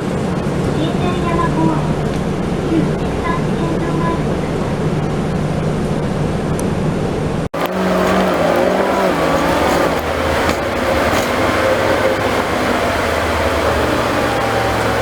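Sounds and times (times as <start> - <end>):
bus engine drone: 0.0 - 15.0
road noise: 0.0 - 15.0.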